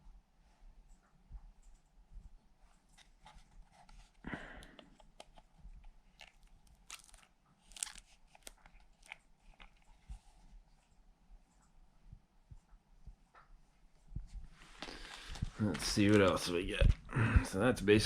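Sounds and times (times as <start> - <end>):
packaging rustling and clicking: 2.8 - 10.3, 14.8 - 17.1.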